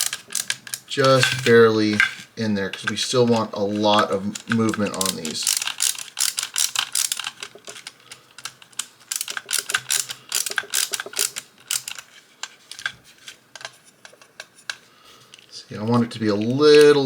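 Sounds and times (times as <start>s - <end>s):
screwdriver driving small screws: 8.8s - 12.0s.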